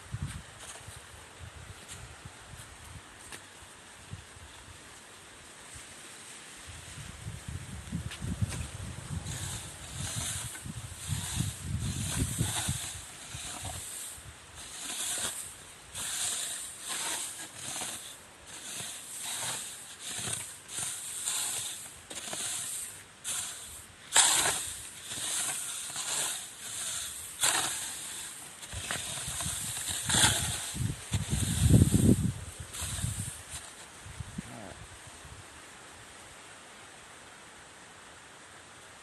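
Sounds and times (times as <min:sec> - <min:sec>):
rice being raked swishing: 0:08.6 - 0:34.0.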